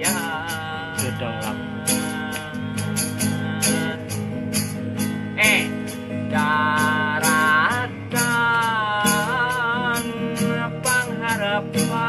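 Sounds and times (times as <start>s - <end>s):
percussion ticks: 0.0s - 12.0s
plucked strings: 0.0s - 12.0s.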